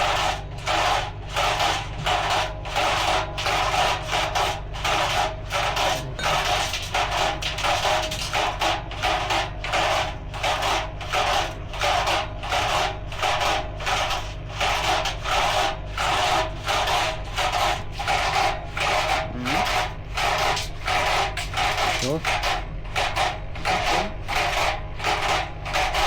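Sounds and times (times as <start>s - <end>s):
low motor hum: 4.9s - 8.0s, 15.3s - 26.0s.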